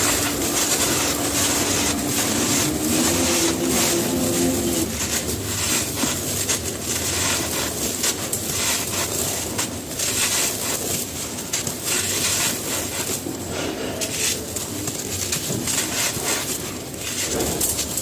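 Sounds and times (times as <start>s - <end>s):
crisp cracks: 0.0s - 13.4s
cement crumbling crunch: 0.0s - 18.0s.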